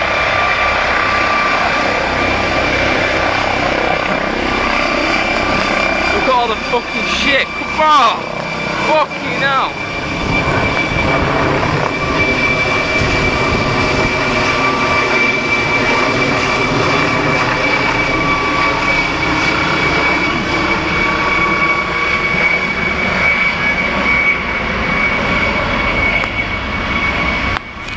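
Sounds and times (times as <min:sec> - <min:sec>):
helicopter rotor noise: 0:00.0 - 0:27.9
helicopter turbine whine: 0:00.0 - 0:27.9
wind buffeting microphone: 0:09.7 - 0:23.0.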